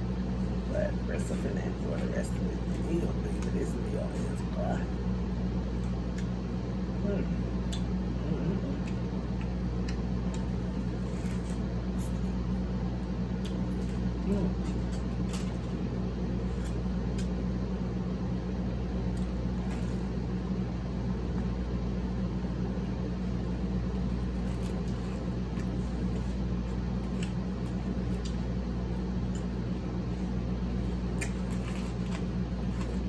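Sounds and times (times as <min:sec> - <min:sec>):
person chewing: 0:24.2 - 0:28.6, 0:29.2 - 0:33.0.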